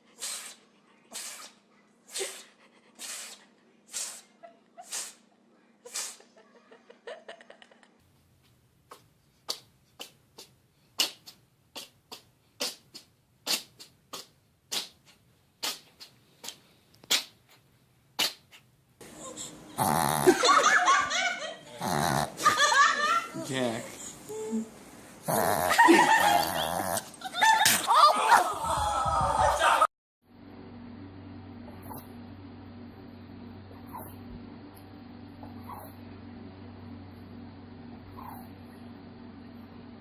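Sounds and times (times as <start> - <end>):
pet sneezing: 0.0 - 6.3, 8.9 - 17.6, 18.2 - 18.7, 35.6 - 36.0, 38.2 - 38.5
laughter: 4.4 - 4.9, 6.2 - 8.0, 20.2 - 23.4, 25.7 - 29.9.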